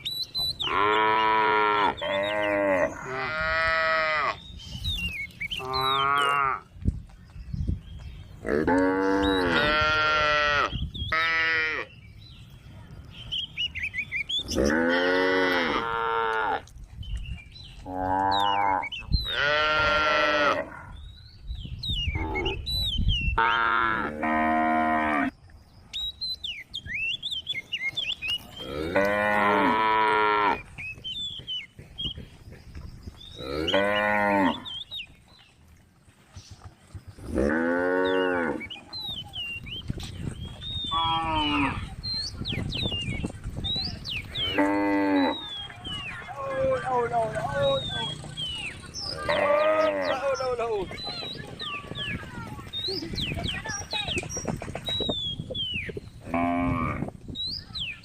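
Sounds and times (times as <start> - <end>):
cattle mooing: 0.7 - 4.4, 8.4 - 11.9, 14.5 - 16.6, 17.8 - 20.9, 28.6 - 30.6.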